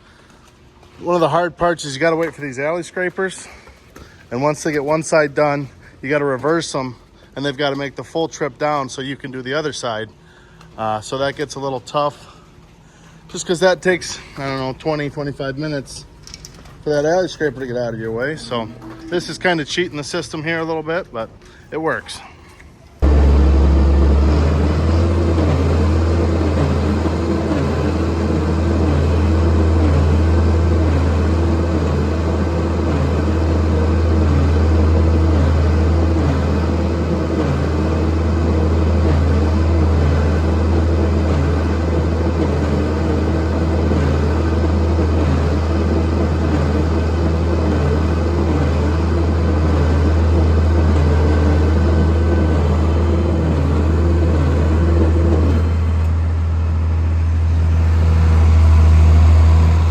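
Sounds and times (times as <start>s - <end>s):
farm machine engine running: 23.0s - 59.9s.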